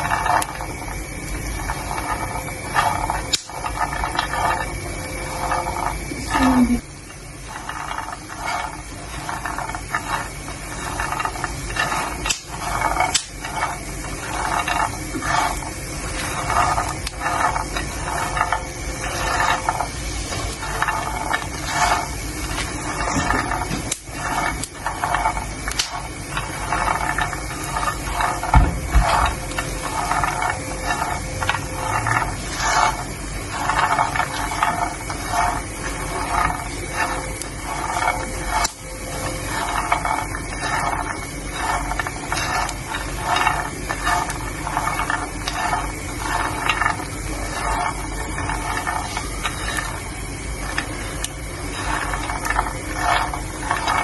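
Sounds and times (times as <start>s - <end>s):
peanuts rattling while stirred: 0.0s - 54.0s.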